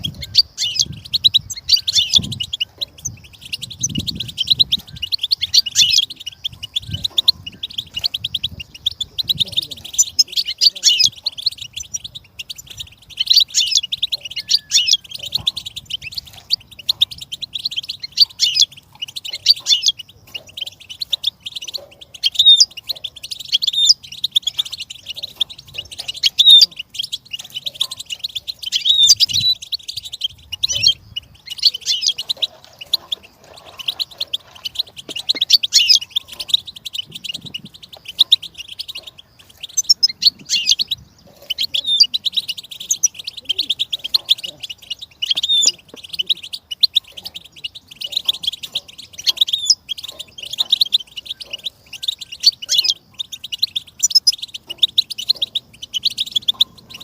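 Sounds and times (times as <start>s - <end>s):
finch twittering song: 0.0s - 57.0s.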